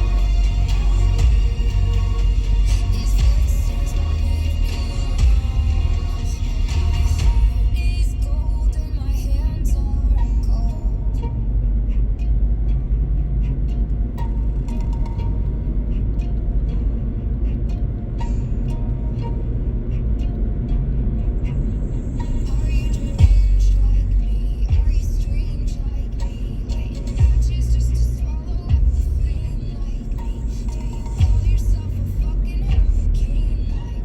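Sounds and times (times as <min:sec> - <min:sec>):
pop music with heavy bass beat: 0:00.0 - 0:12.4, 0:13.7 - 0:34.0
car engine and tyre rumble: 0:00.0 - 0:34.0.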